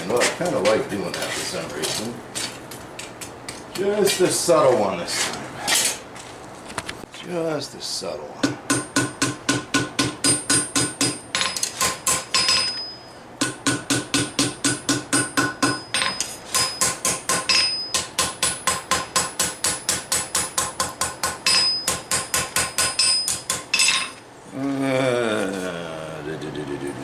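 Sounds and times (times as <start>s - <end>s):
hammer striking steel on anvil: 8.4s - 24.2s.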